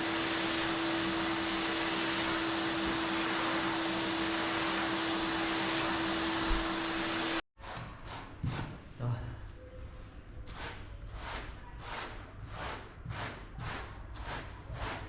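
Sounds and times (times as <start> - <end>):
vacuum motor running: 0.0 - 7.4.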